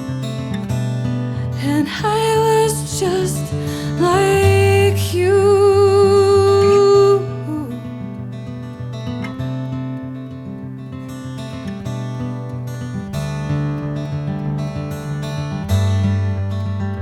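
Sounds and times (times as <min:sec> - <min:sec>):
strummed acoustic guitar: 0:00.0 - 0:17.0
person singing with vibrato: 0:01.5 - 0:08.1.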